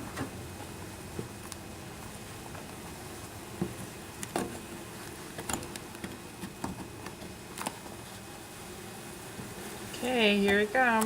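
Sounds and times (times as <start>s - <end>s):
honeybees humming: 0.0s - 11.0s
hive tool clicking and scraping: 3.6s - 8.0s.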